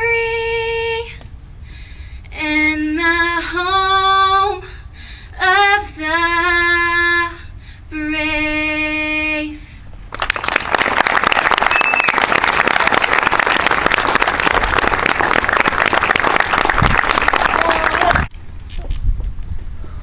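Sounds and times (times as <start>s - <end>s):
audience applauding: 10.1s - 18.3s.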